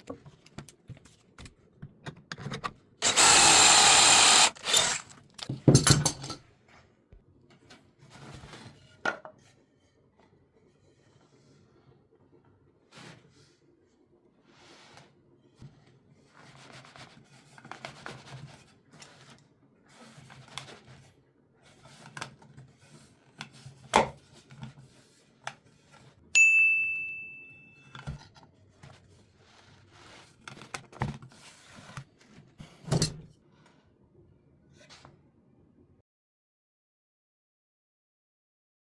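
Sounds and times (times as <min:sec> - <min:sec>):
wood pieces and tools handled: 0:02.4 - 0:06.4.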